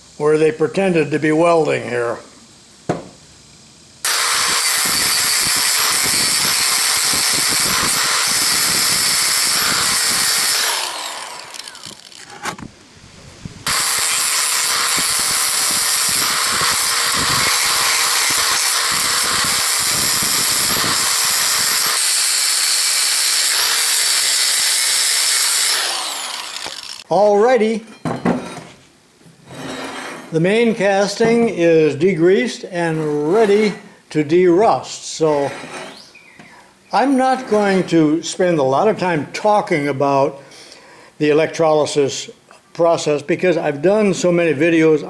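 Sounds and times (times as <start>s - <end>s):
angle grinder whining: 4.0s - 12.7s, 13.6s - 27.1s.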